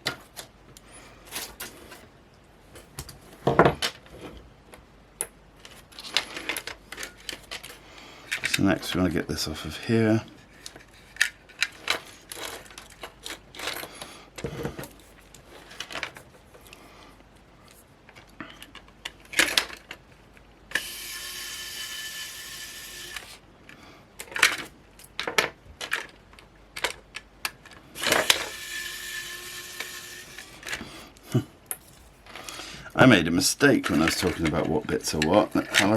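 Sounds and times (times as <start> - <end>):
plastic parts clicking and snapping: 4.7 - 9.1, 10.6 - 16.8, 18.1 - 20.8, 24.2 - 28.6, 33.7 - 35.9
small motorised tool whining: 20.7 - 23.4, 28.0 - 30.8.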